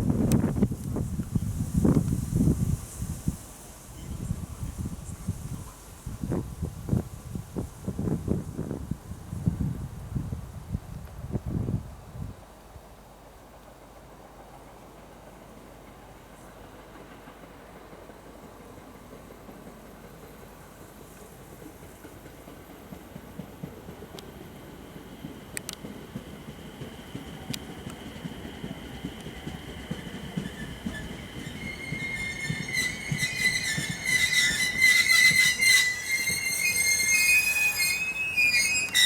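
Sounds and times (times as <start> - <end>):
train rumble: 0.0 - 39.0
train wheels squealing: 3.9 - 5.8, 27.0 - 39.0.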